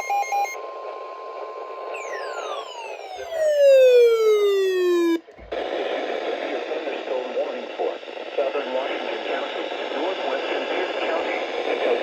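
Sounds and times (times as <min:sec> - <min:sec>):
radio hiss: 0:05.0 - 0:12.0.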